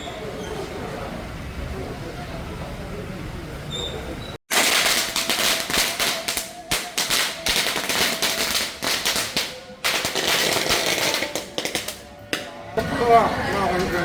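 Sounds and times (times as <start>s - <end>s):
firecrackers crackling: 4.5s - 13.0s.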